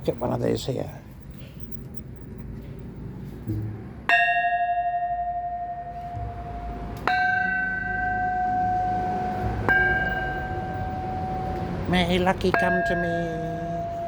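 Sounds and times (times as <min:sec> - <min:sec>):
temple bells ringing: 0:04.1 - 0:14.0.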